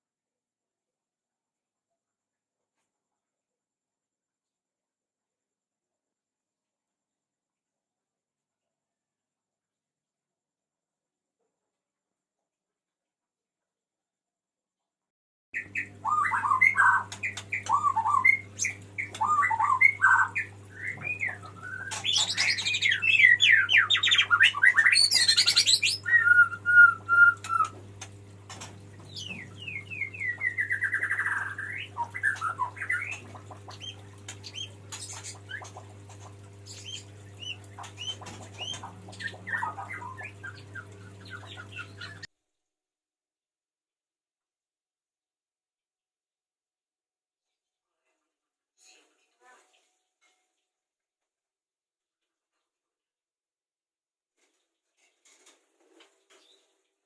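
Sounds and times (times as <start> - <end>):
bird singing whistled trills: 15.6 - 27.8, 29.1 - 33.2.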